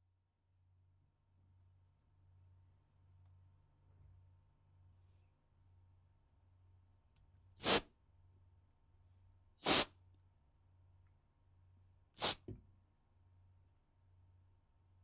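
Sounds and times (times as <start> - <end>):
compressed air can hissing: 7.6 - 7.8, 9.6 - 9.9, 12.2 - 12.6.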